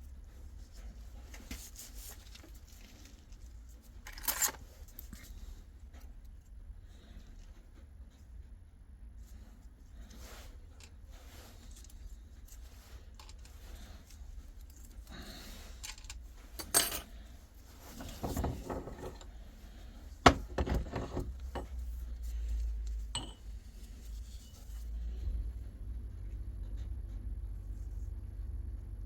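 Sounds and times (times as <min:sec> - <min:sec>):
metal parts clinking and knocking: 0:04.0 - 0:04.6, 0:15.8 - 0:17.2, 0:17.9 - 0:19.3, 0:20.2 - 0:21.7, 0:23.1 - 0:23.5.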